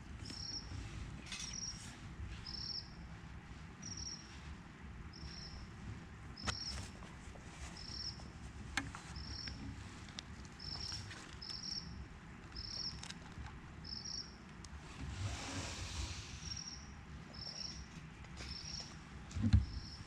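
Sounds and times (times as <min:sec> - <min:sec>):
cricket chirping: 0:13.8 - 0:14.4.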